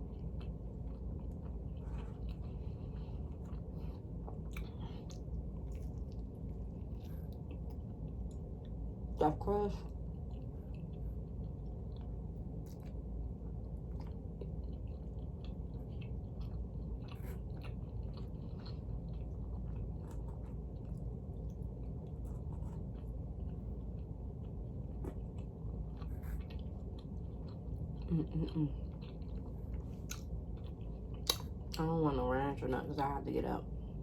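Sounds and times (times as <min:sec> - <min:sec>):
person chewing pizza: 0:00.0 - 0:09.2, 0:09.9 - 0:31.9
steady low hum: 0:00.0 - 0:34.0.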